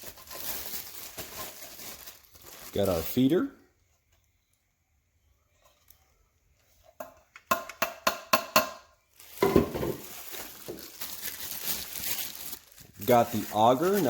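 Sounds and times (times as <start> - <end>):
plastic packaging crinkling: 0.0 - 3.4, 9.1 - 14.0.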